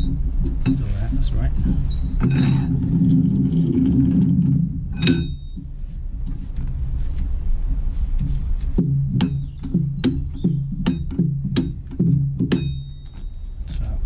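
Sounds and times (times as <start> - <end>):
heavy metal scraping: 0.0 - 13.8
sharp metallic clink: 5.0 - 5.6, 12.5 - 13.5.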